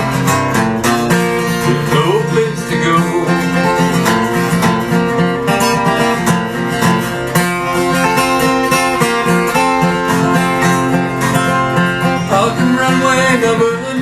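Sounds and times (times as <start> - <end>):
acoustic guitar picked and strummed: 0.0 - 14.0.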